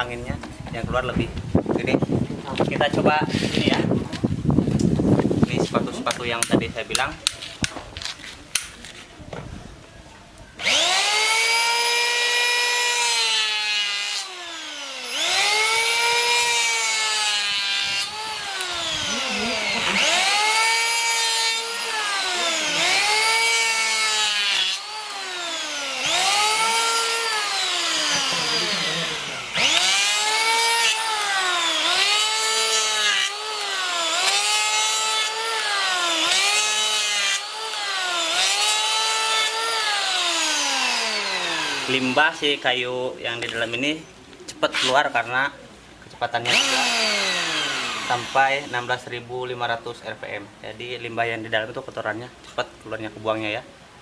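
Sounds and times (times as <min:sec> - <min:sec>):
electric planer whining through wood: 0:10.6 - 0:42.6, 0:46.4 - 0:48.8.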